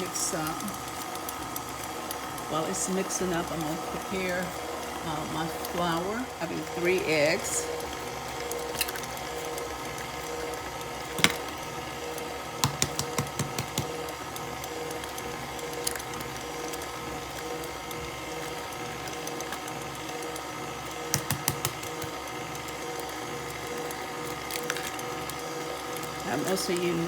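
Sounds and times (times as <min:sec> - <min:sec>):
electric mixer running: 0:00.0 - 0:27.0
sharp taps and clicks: 0:12.6 - 0:14.0, 0:21.1 - 0:22.2.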